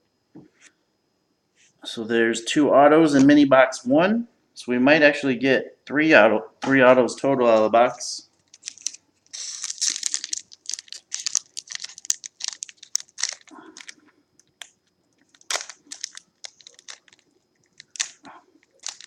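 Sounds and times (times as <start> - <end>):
wrapper crinkling and tearing: 8.4 - 19.0
cards being pulled out: 8.5 - 13.6.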